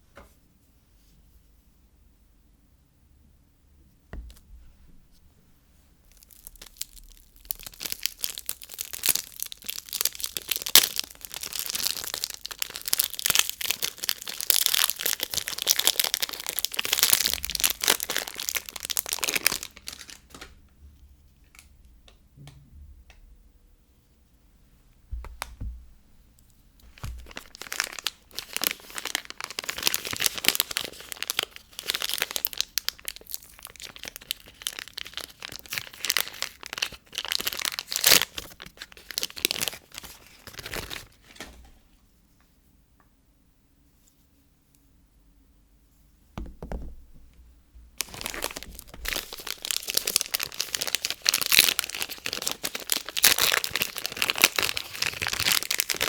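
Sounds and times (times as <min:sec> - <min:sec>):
wrappers crinkling: 0:06.0 - 0:20.5, 0:26.8 - 0:41.5, 0:48.0 - 0:56.0.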